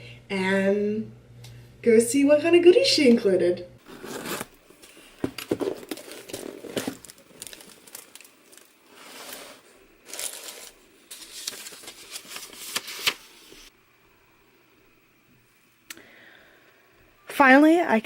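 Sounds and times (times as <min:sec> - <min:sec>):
packaging crinkling and rustling: 0:03.8 - 0:13.7.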